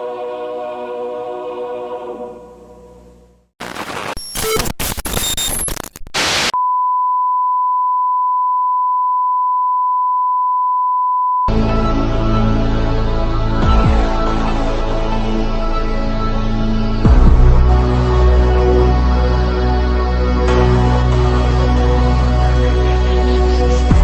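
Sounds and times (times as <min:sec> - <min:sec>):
loud static with crackles: 0:03.6 - 0:06.6
music: 0:11.5 - 0:24.0.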